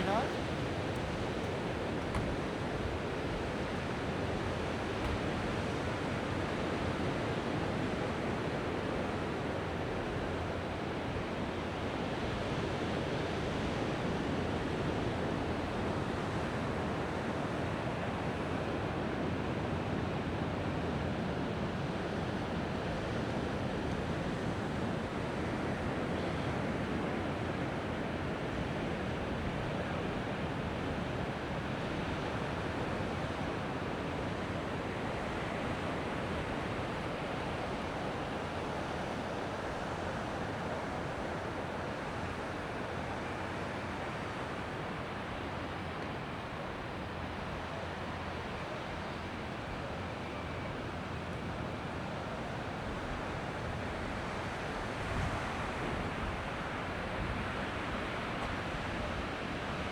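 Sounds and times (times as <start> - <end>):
waves breaking on beach: 0.0 - 1.9, 50.8 - 59.9.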